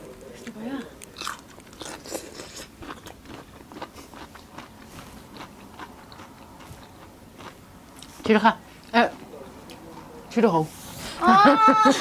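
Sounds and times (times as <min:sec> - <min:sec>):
person chewing with crunches: 0:00.1 - 0:08.2.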